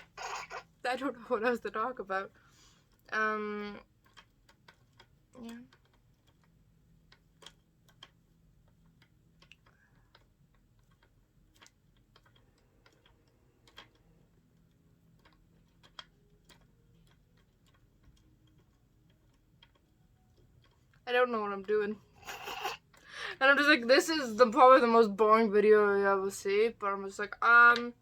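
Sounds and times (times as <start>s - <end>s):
faint clicks and taps: 1.3s - 25.0s.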